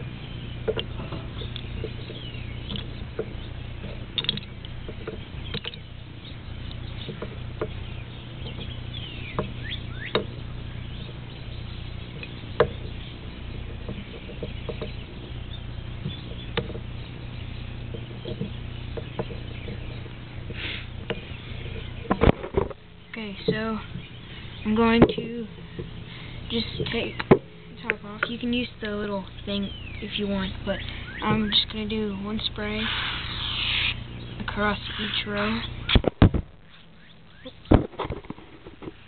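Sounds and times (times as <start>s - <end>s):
low hum: 0.0s - 39.0s.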